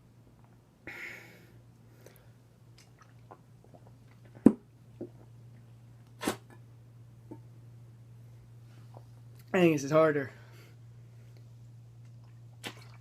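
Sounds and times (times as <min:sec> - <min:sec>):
steady low hum: 0:00.0 - 0:13.0
person drinking and swallowing: 0:02.0 - 0:05.4, 0:12.0 - 0:13.0.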